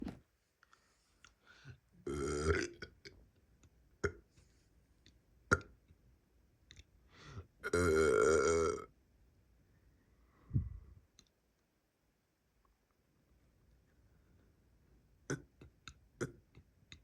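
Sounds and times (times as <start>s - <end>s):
person burping: 2.0s - 3.1s, 7.6s - 8.9s, 15.3s - 16.5s.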